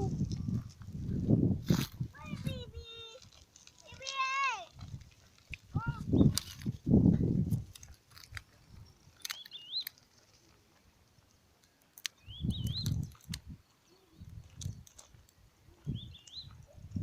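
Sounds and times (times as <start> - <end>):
scattered clicks: 9.2 - 10.2.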